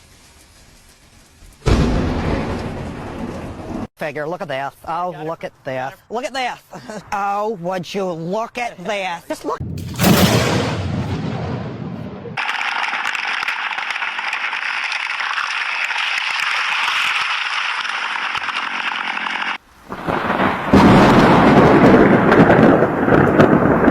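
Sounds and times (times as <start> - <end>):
rain hissing: 0.0 - 3.9, 12.4 - 23.9
thunder rumble: 1.6 - 3.9, 9.6 - 12.4, 19.8 - 23.9.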